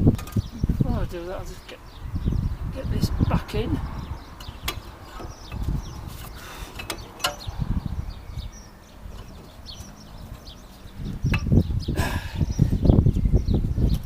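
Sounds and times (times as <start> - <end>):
brake parts clicking: 6.7 - 7.5.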